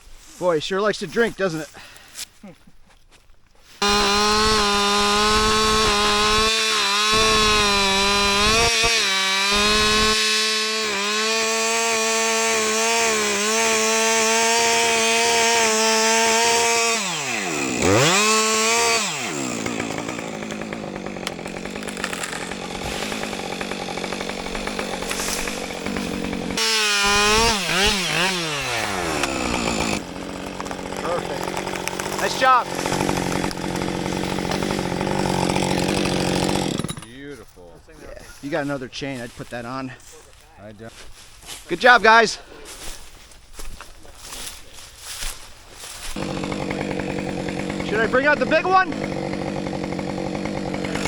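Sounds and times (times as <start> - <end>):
chainsaw cutting wood: 3.8 - 37.3, 44.2 - 51.0.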